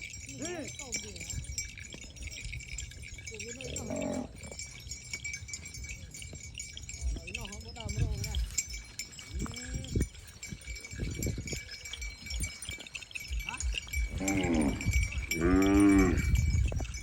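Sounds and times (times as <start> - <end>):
cattle mooing: 3.8 - 4.3, 14.1 - 16.4.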